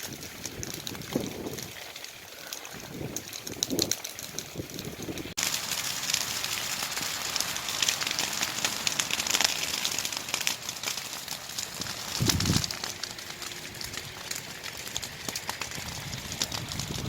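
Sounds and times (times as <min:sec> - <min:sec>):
burning grass crackling and popping: 0:00.0 - 0:17.0
fire hiss: 0:05.1 - 0:17.0.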